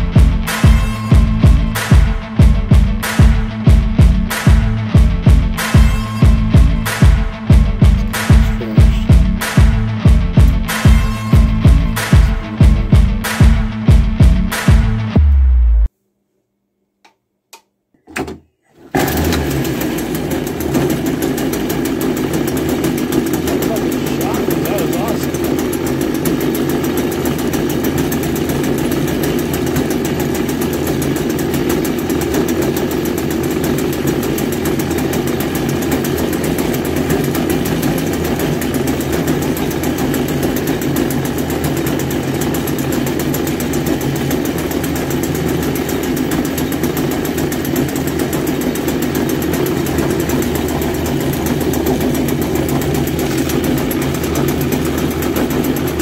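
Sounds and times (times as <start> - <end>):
string trimmer engine running: 18.9 - 56.0.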